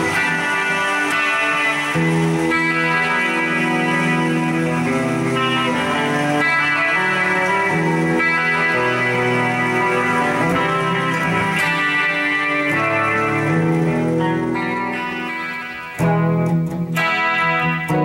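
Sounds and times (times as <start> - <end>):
electric guitar chords: 0.0 - 18.0.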